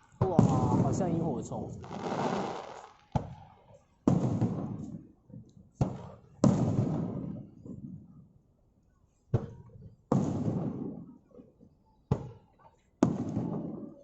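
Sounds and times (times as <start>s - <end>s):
firework shells bursting: 1.7s - 3.3s.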